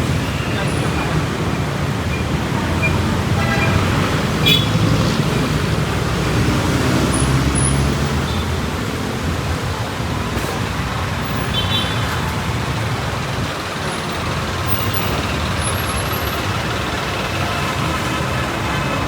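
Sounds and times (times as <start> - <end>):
motor vehicles passing: 0.0 - 19.0
road noise: 0.0 - 19.0.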